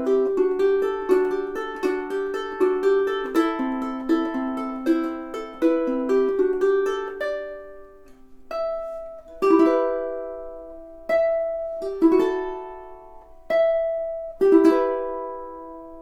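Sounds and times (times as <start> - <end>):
fingerpicked ukulele: 0.0 - 16.0.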